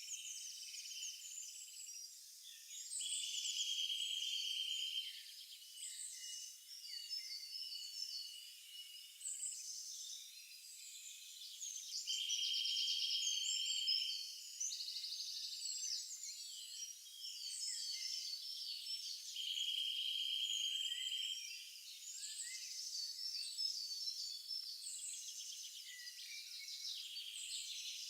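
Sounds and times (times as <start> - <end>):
birds chirping and whistling: 10.9 - 28.0.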